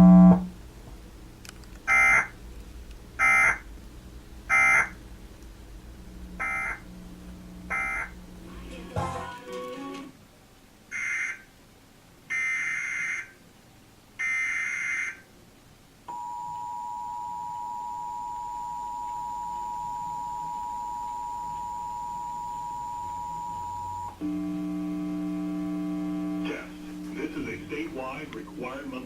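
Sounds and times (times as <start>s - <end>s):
two-tone attention signal: 0.0s - 0.5s, 16.1s - 27.9s
steady low tone with overtones: 0.0s - 1.5s, 2.3s - 9.0s, 20.3s - 29.0s
warbling digital data tones: 7.7s - 8.2s.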